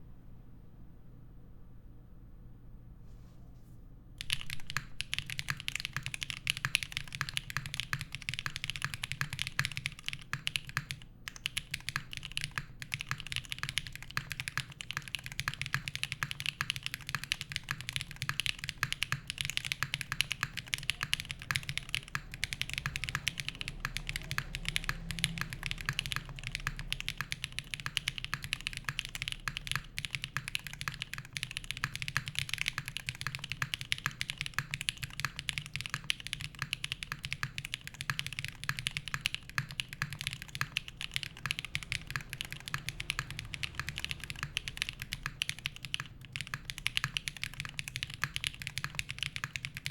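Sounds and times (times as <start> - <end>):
mechanical keyboard typing: 4.2 - 49.9.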